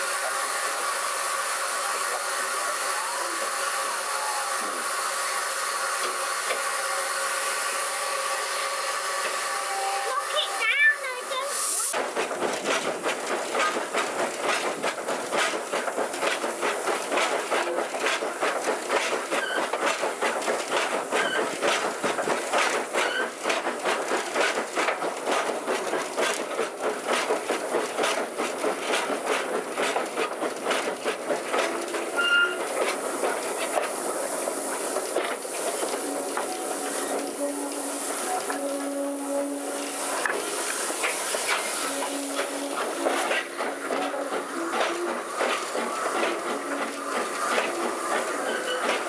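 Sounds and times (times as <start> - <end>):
railway carriage running on track: 0.0 - 49.0
wheels clicking over rail joints: 11.9 - 39.5, 40.2 - 49.0
train brake squeal: 19.3 - 19.7, 21.2 - 21.5, 23.0 - 23.4, 32.1 - 32.7, 47.8 - 49.0.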